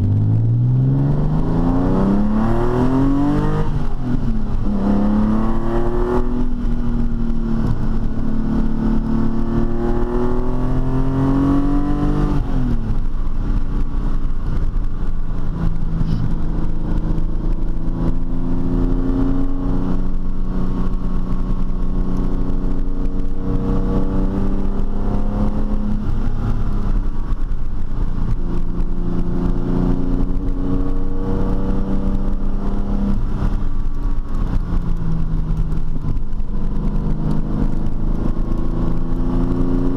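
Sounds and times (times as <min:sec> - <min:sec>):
car engine accelerating: 0:00.0 - 0:39.9
road rumble: 0:00.0 - 0:39.9.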